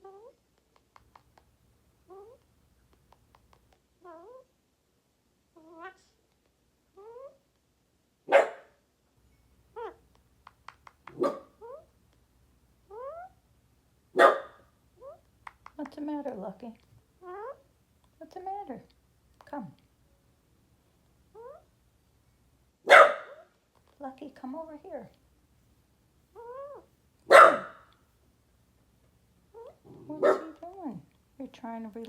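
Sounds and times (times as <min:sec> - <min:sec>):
parrot calling: 0:09.7 - 0:10.1, 0:12.9 - 0:13.4, 0:21.3 - 0:21.7, 0:26.3 - 0:28.0.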